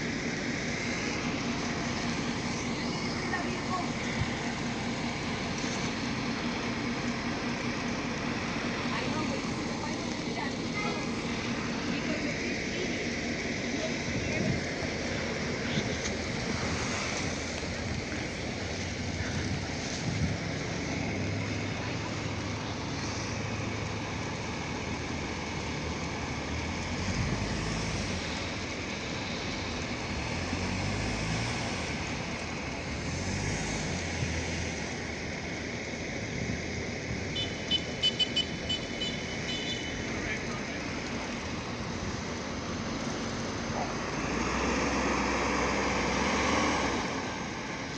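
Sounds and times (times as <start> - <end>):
street traffic noise: 0.0 - 47.9
vehicle engine humming: 0.0 - 47.9
wind: 0.0 - 47.9.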